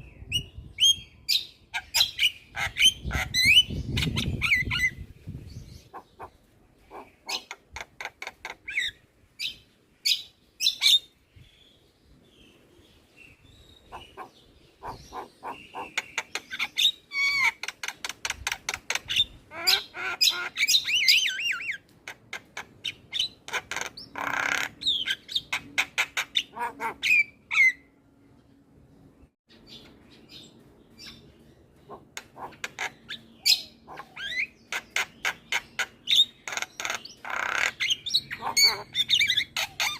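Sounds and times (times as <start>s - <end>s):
myna calling with harsh chatter: 13.9s - 16.4s, 31.9s - 39.9s.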